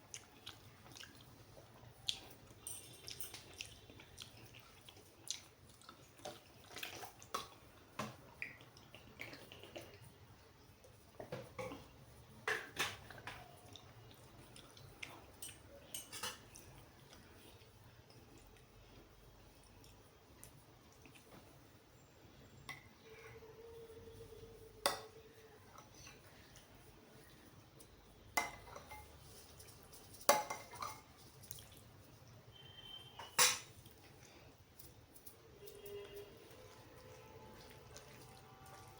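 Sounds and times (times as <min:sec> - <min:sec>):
wet eating sounds: 0:00.0 - 0:11.9, 0:13.0 - 0:21.6, 0:30.9 - 0:33.0, 0:33.7 - 0:38.9
dishware clinking: 0:15.4 - 0:16.4, 0:30.0 - 0:31.1, 0:33.1 - 0:33.8.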